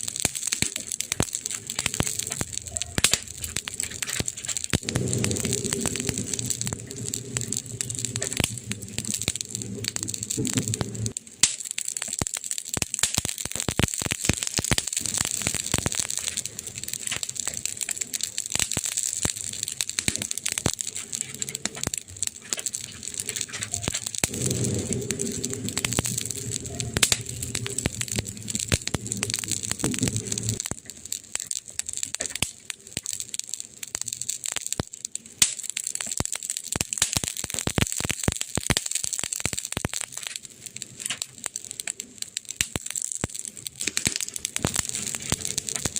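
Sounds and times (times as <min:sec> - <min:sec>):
wood fire crackling: 0:00.0 - 0:45.9
low steady drone: 0:23.8 - 0:30.6.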